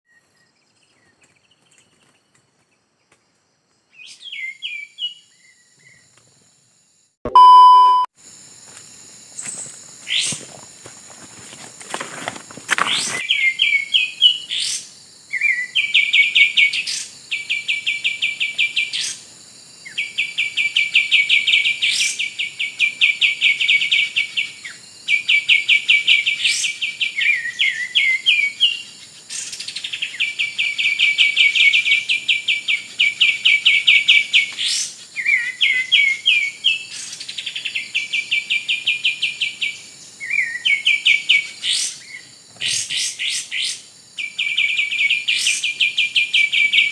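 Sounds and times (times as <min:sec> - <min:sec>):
bird song trills: 0:03.9 - 0:06.2, 0:12.9 - 0:19.2, 0:19.9 - 0:46.9.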